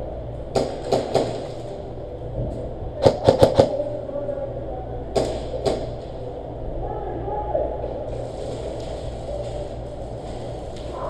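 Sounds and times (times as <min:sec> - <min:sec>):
airsoft guns firing: 0:00.5 - 0:01.7, 0:03.0 - 0:03.8, 0:05.2 - 0:06.0.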